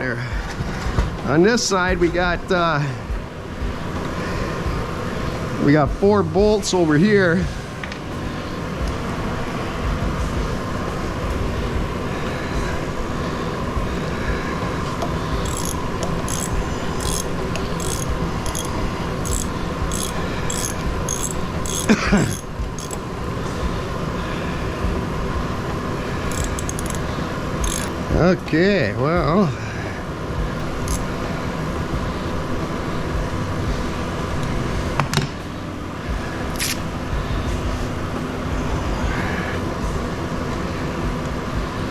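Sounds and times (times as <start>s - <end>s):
steady mechanical hum: 0.0s - 41.9s
metallic clicks of bolts: 15.4s - 18.7s, 27.6s - 27.9s, 36.6s - 36.8s.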